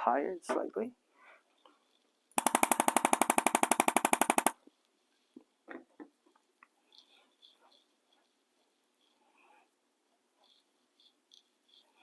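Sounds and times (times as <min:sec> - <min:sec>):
rapid percussive thrusts: 0:02.4 - 0:04.5.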